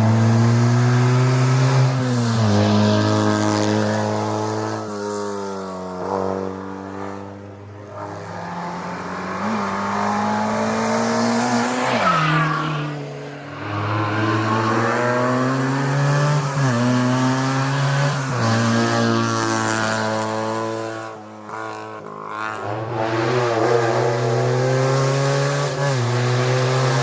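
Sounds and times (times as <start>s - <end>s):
racing car engine accelerating: 8.0s - 20.9s.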